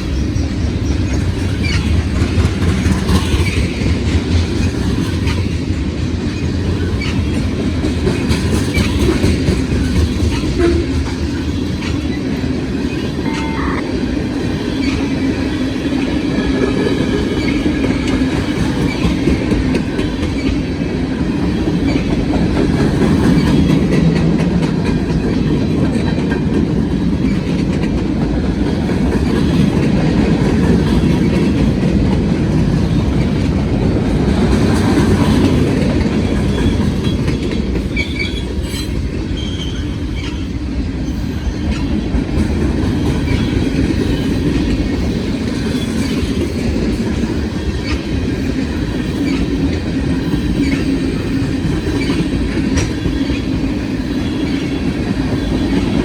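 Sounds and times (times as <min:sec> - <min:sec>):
freight train wheels clattering: 0:00.0 - 0:13.1, 0:14.4 - 0:56.0.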